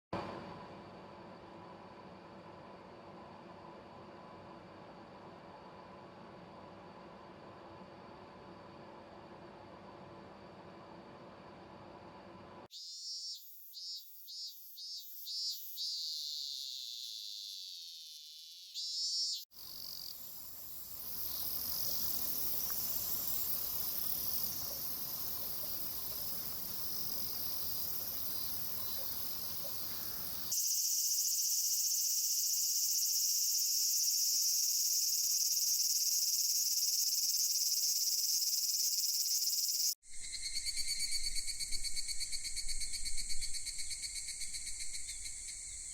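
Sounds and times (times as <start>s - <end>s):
insects chirping: 12.7s - 45.9s.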